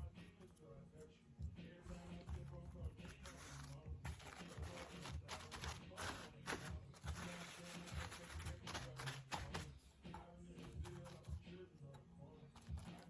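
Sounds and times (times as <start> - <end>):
brush rustling on tissue paper: 1.8 - 9.9.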